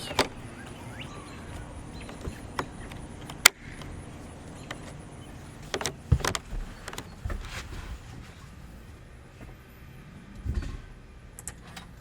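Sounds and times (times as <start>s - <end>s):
plastic clicks and knocks: 0.0s - 7.5s.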